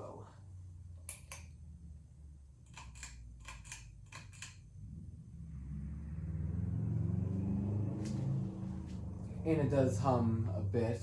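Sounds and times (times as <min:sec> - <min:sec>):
low fan hum: 0:00.0 - 0:11.0
ceiling fan clicking: 0:00.9 - 0:01.7, 0:02.6 - 0:04.8.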